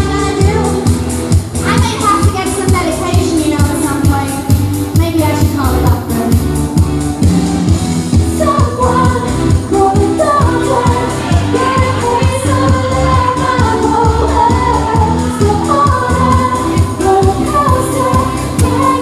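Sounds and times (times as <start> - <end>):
woman singing: 0.0 - 1.0, 8.4 - 19.0
pop backing track: 0.0 - 19.0.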